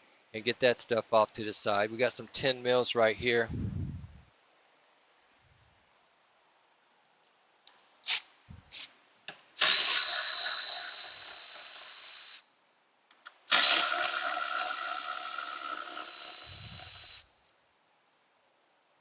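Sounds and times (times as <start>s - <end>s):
power tool whining: 9.6s - 12.4s, 13.5s - 17.3s.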